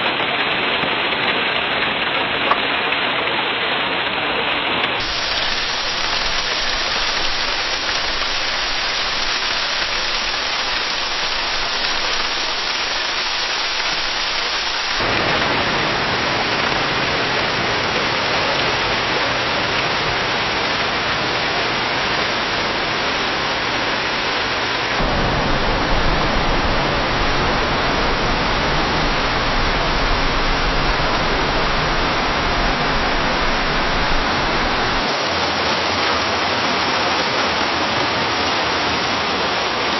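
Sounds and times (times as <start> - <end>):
rain falling in a forest: 0.0 - 39.9
deep low rumble: 25.0 - 35.0.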